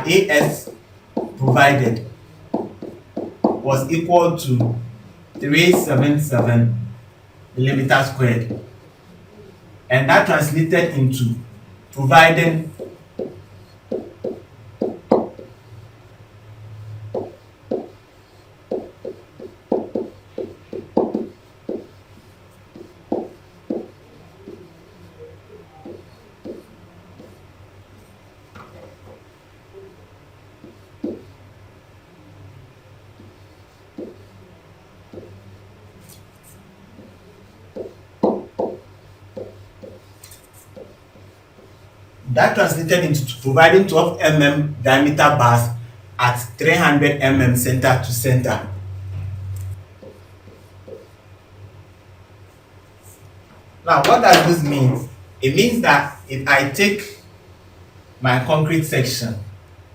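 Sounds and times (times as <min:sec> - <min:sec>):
faint low hum: 0:00.0 - 0:59.9
dull taps and knocks: 0:02.5 - 0:03.6, 0:12.8 - 0:15.6, 0:17.1 - 0:18.0, 0:18.7 - 0:22.0, 0:22.7 - 0:24.6, 0:30.6 - 0:31.3, 0:34.0 - 0:34.2, 0:35.1 - 0:35.3, 0:37.7 - 0:40.1, 0:50.0 - 0:51.1.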